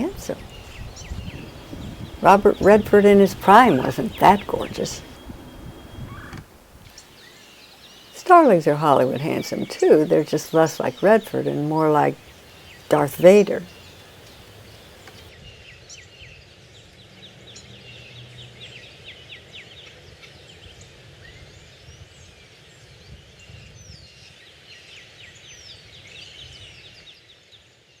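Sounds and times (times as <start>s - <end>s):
low background rumble: 0.0s - 7.0s
birds rattling clicking calls: 0.0s - 15.3s
bird whistled slurs: 0.3s - 7.0s.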